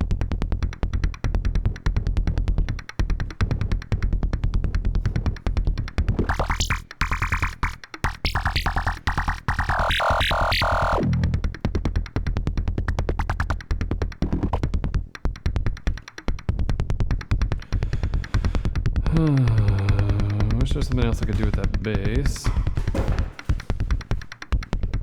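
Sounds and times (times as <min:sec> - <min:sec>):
steady low synth bass: 0:00.0 - 0:15.1
rapid percussive synth hits: 0:00.1 - 0:25.0
high synth tone sliding: 0:06.3 - 0:11.4.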